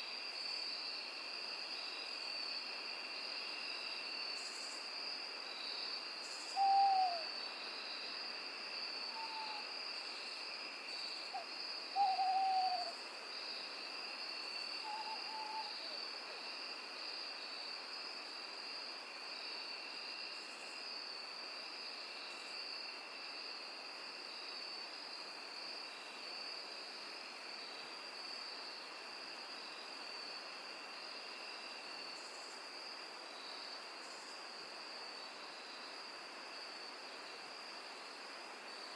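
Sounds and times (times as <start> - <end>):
night insects chorus: 0.0 - 38.9
owl hooting: 6.5 - 7.3, 9.1 - 9.7, 11.4 - 13.0, 14.8 - 16.0.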